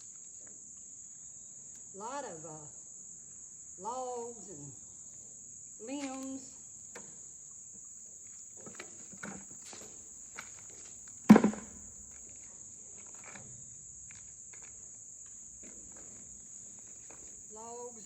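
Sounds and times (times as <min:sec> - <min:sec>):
insects chirring: 0:00.0 - 0:18.0
sharp loud thump: 0:11.3 - 0:11.8.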